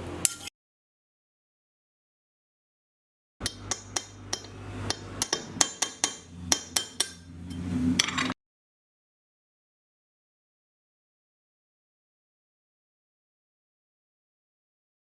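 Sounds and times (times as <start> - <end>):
tool tapping on metal: 3.4 - 8.4.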